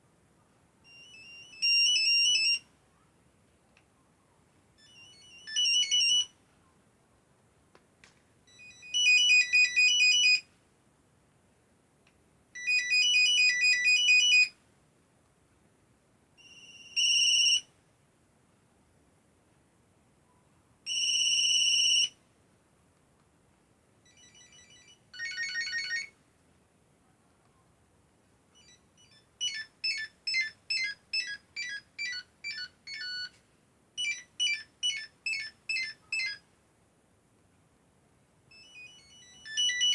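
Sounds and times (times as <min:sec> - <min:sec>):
monophonic phone ringtones: 0:00.8 - 0:02.6, 0:04.8 - 0:06.4, 0:08.5 - 0:10.4, 0:12.6 - 0:14.5, 0:16.4 - 0:17.7, 0:20.9 - 0:22.2, 0:24.0 - 0:26.1, 0:28.6 - 0:33.4, 0:34.0 - 0:36.4, 0:38.5 - 0:39.9.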